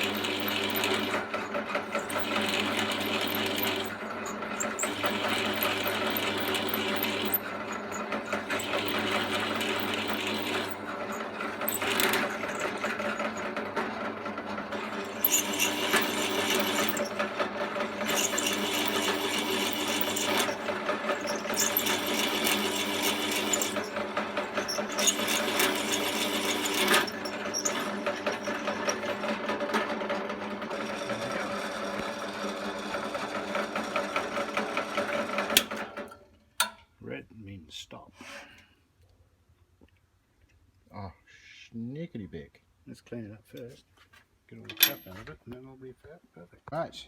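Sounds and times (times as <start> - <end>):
drill bit cutting metal: 0.0 - 14.0, 14.6 - 29.7
drill press motor hum: 0.0 - 36.0.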